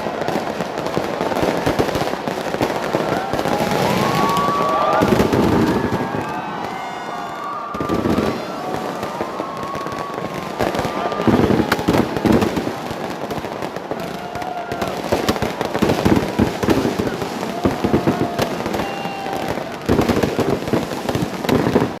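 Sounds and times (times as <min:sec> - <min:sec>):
fireworks crackling bangs: 0:00.0 - 0:22.0.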